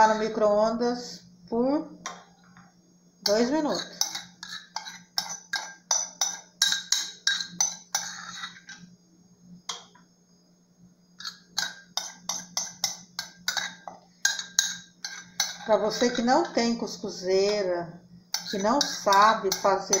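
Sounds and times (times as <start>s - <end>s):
utensil clinking against dishware: 3.3s - 8.8s, 18.4s - 20.0s.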